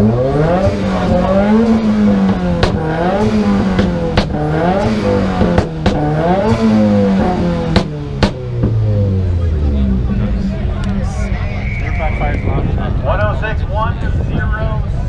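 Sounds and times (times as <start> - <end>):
car engine revving: 0.0 - 13.5
exhaust pops and bangs: 0.4 - 9.1.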